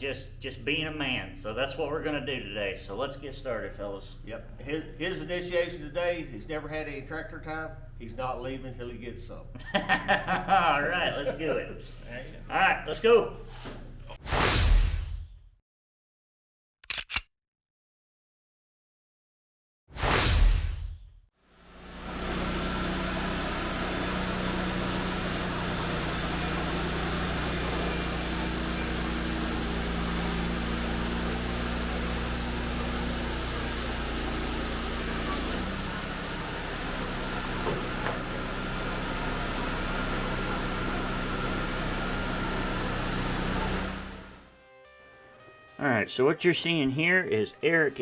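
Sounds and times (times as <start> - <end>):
saw cutting wood hiss: 21.6 - 44.5
sawmill engine hum: 21.6 - 44.5.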